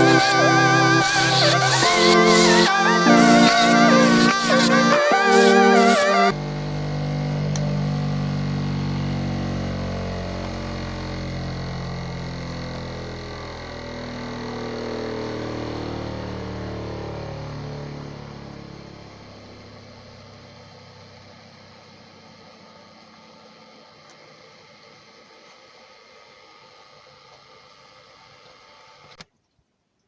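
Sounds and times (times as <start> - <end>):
bench grinder motor humming: 0.0 - 8.0.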